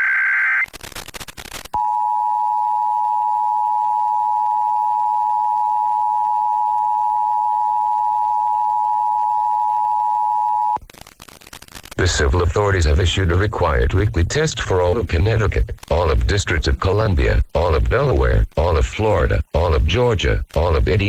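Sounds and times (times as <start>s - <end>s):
radio static burst: 0.0s - 1.8s, 10.8s - 21.0s.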